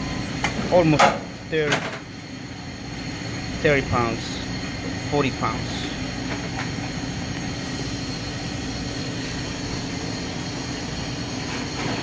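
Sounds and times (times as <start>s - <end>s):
air conditioner humming: 0.0s - 12.0s.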